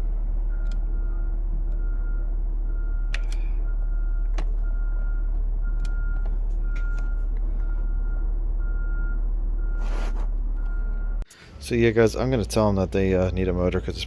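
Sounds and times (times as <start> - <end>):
low hum: 0.0 - 13.9
sharp clicks: 3.1 - 3.5.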